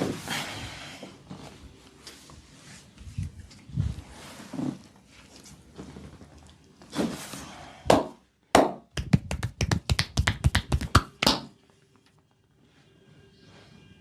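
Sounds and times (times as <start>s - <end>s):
percussive massage taps: 7.9s - 11.5s.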